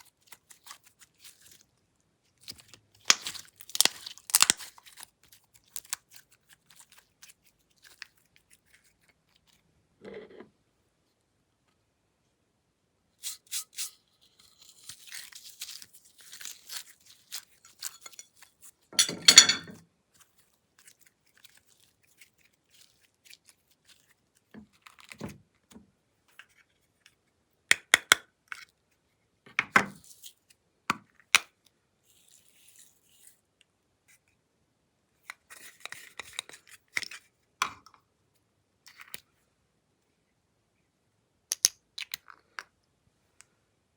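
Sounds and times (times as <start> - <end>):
sticky slime clicks and crackles: 2.4 - 6.2.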